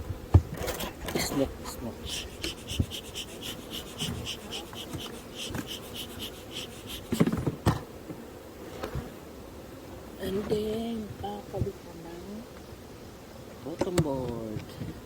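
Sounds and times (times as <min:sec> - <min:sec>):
bee smoker bellows squeaky puffs: 0:00.6 - 0:07.5.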